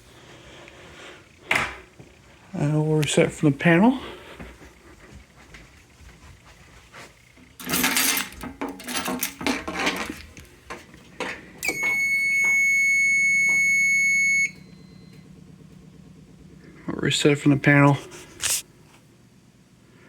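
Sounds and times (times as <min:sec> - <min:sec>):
handling and rustling noise: 0:04.3 - 0:12.0, 0:17.9 - 0:19.1
high-pitched buzzer beep: 0:11.6 - 0:15.2.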